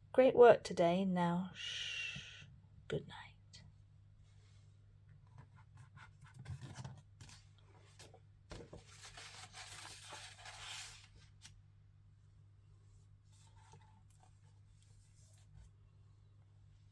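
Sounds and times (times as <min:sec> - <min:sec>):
low electrical hum: 0:00.0 - 0:16.9.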